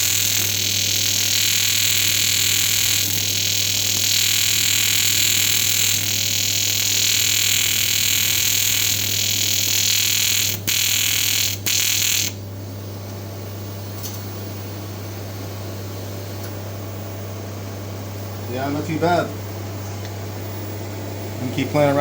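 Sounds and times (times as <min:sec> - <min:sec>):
welding arc hissing and buzzing: 0:00.0 - 0:12.5.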